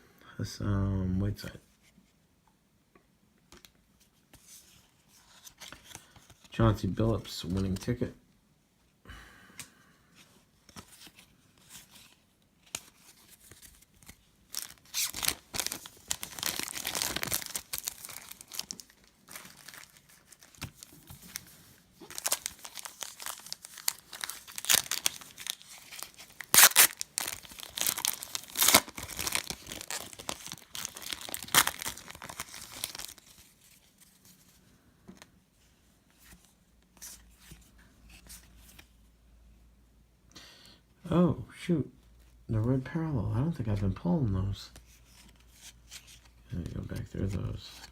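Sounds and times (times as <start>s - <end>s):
wrapper tearing and crinkling: 12.7s - 33.9s.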